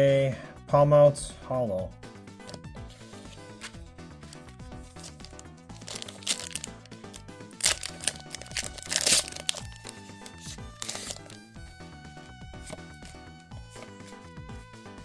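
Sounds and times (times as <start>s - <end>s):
background music: 0.0s - 15.0s
foil wrapper crinkling and tearing: 4.9s - 11.4s.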